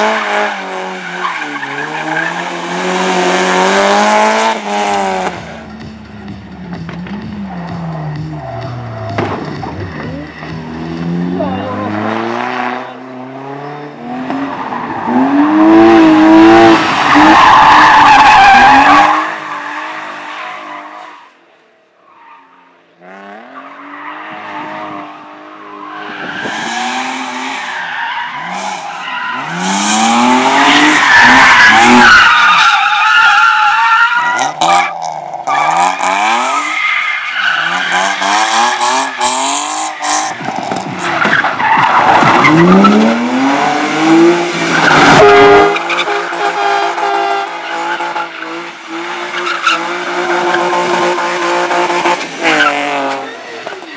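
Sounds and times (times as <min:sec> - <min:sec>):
race car engine revving: 0:00.0 - 0:20.2, 0:23.0 - 0:32.6, 0:37.4 - 0:53.9
tyres squealing and skidding: 0:00.0 - 0:21.4, 0:22.0 - 0:53.9.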